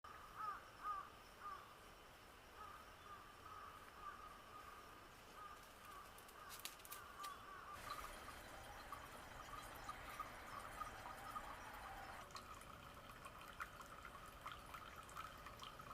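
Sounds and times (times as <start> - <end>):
faint short bird calls: 0.1 - 1.7.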